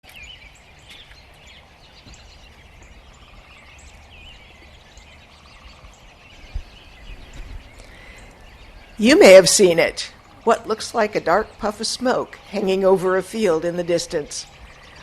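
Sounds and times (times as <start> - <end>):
flock of birds chirping: 0.0 - 15.0.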